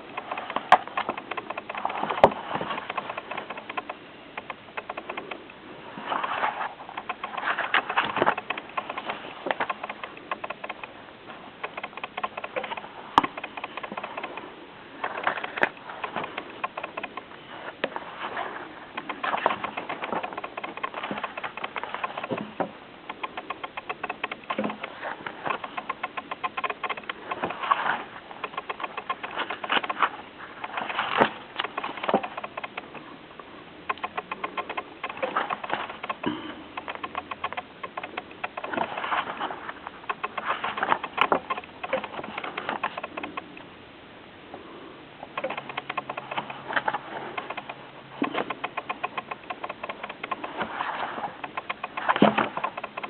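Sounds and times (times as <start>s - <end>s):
light clicks and taps: 0.0s - 5.6s, 33.8s - 43.7s, 45.3s - 53.0s
book pages rustling: 0.0s - 33.1s, 33.9s - 43.6s, 45.3s - 53.0s.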